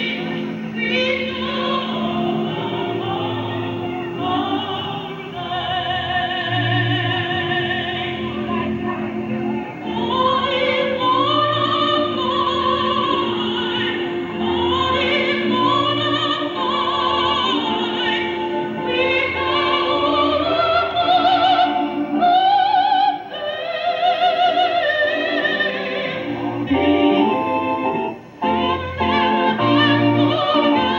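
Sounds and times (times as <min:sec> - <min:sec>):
person singing with vibrato: 0:00.0 - 0:30.9
sustained accompanying note: 0:25.2 - 0:30.9.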